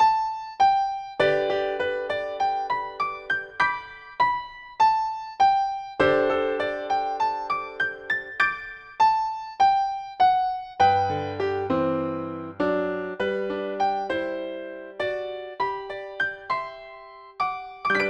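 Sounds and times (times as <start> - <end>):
solo piano ballad: 0.0 - 18.0.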